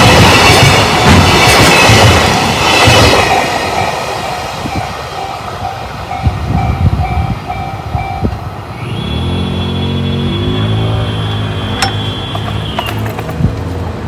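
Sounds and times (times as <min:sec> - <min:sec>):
train wagons clattering: 0:11.7 - 0:14.0.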